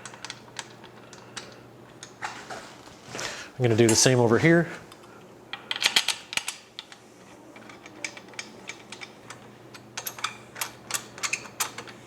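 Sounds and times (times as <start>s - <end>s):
small bolts clicking and tapping: 0.0s - 2.2s, 7.6s - 12.0s.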